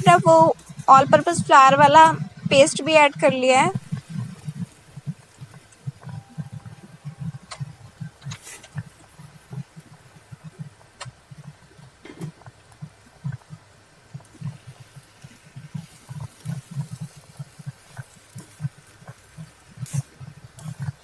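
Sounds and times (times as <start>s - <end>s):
thick sauce bubbling in a pan: 3.8s - 21.0s.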